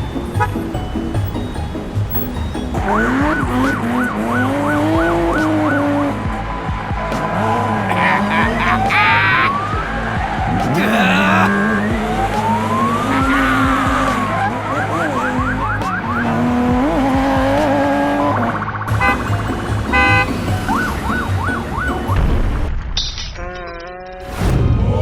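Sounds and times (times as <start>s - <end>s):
steady musical tones: 0.0s - 13.4s, 14.0s - 22.6s
siren wailing and yelping: 7.8s - 9.8s, 10.7s - 16.5s.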